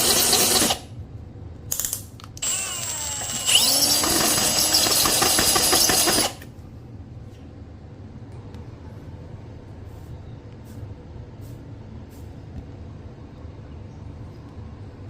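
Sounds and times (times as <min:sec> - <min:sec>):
power drill boring into ceramic: 0:00.0 - 0:00.8, 0:02.4 - 0:06.4.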